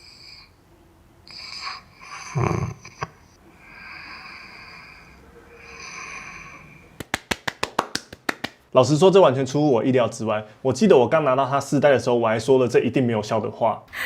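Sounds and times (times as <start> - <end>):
loud slow breathing: 0.0 - 2.2, 3.4 - 7.0.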